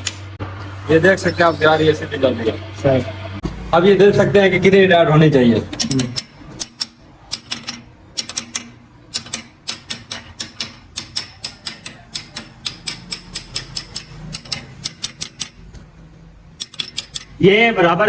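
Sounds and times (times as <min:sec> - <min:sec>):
small hammer tapping on metal: 0:05.7 - 0:15.9.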